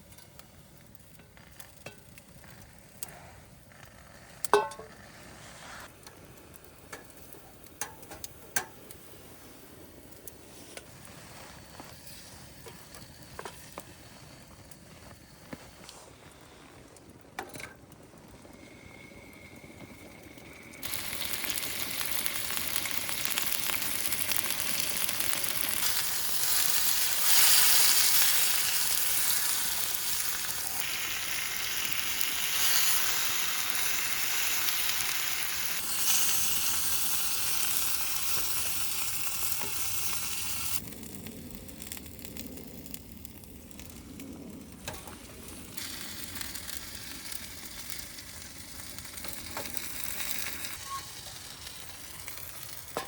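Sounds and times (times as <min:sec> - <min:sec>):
chicken sizzling in a hot pan: 0:18.4 - 0:43.8, 0:44.8 - 0:53.0.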